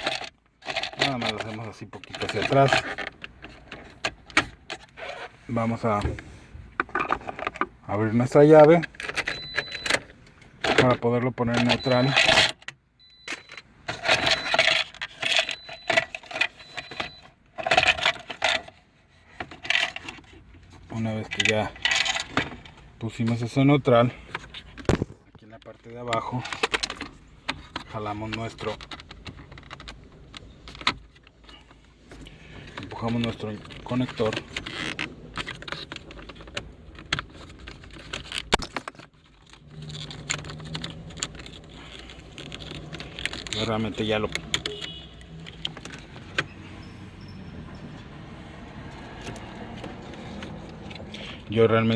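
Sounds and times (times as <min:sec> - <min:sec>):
car keys jangling: 0:08.6 - 0:25.1, 0:32.7 - 0:51.9
plastic connector clicks and rattles: 0:33.0 - 0:46.4.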